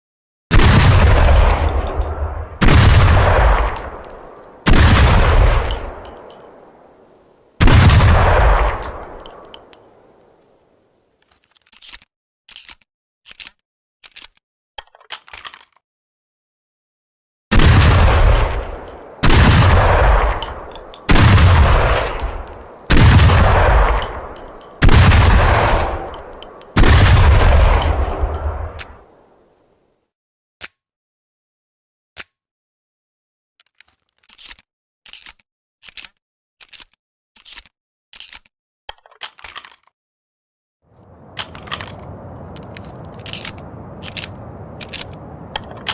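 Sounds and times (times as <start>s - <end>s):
shotgun blasts: 0.5s - 10.4s, 17.5s - 29.3s, 41.0s - 45.9s
echo: 0.9s - 10.3s, 17.6s - 29.4s, 41.0s - 45.9s
faint clicks: 5.2s - 6.9s, 8.3s - 10.5s, 18.4s - 26.8s, 27.5s - 29.1s, 41.0s - 45.9s.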